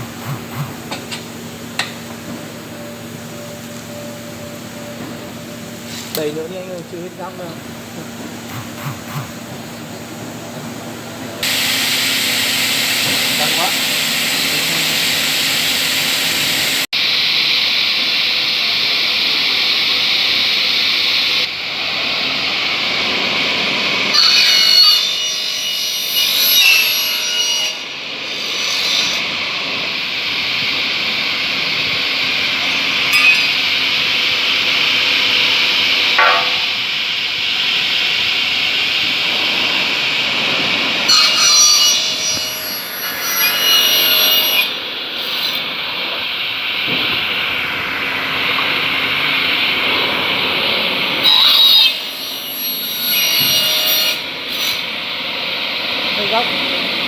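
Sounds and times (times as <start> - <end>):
saw cutting through metal: 0.0 - 2.1, 5.8 - 9.8, 11.4 - 16.9, 21.8 - 46.1, 49.6 - 55.0.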